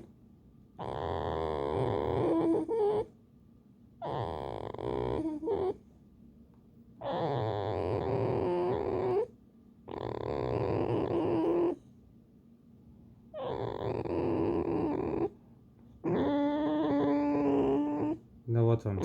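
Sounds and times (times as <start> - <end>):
fox creaky grunting calls: 13.4 - 15.3, 16.0 - 18.2.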